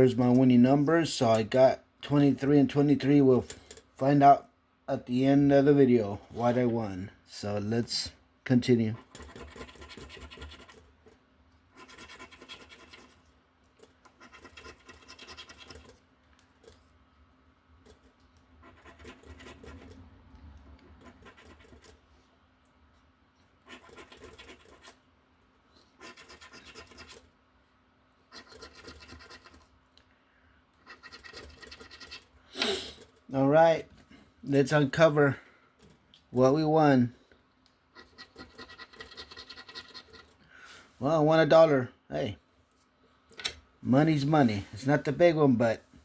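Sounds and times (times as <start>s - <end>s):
lottery ticket scratching: 8.5s - 10.9s, 11.7s - 13.2s, 14.0s - 16.0s, 18.6s - 20.0s, 23.7s - 25.0s, 28.3s - 29.6s.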